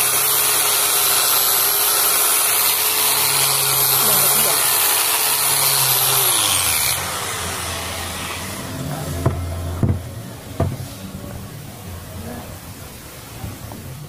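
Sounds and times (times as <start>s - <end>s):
planer motor humming: 0.0s - 10.4s
wood planer cutting: 0.0s - 10.8s
sharp knocks: 9.2s - 10.9s.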